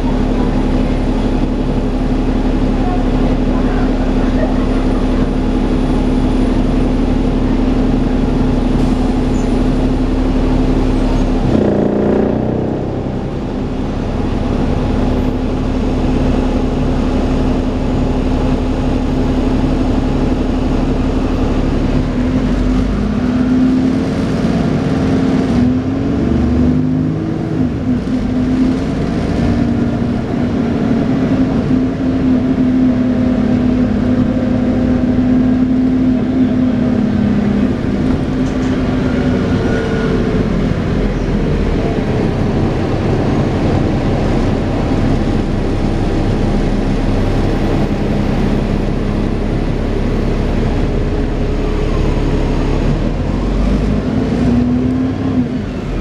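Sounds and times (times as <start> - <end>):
bus engine running: 0.0 - 56.0
whining bus: 0.0 - 56.0.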